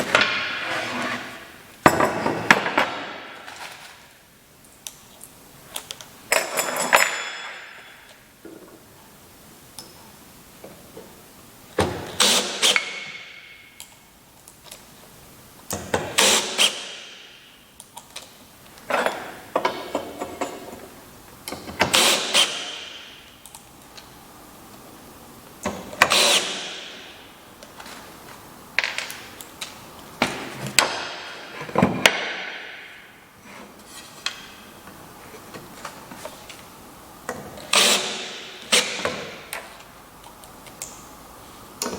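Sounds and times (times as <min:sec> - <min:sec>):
scraping and clattering on wood: 0:00.0 - 0:04.0
quiet workshop noise: 0:00.0 - 0:41.9.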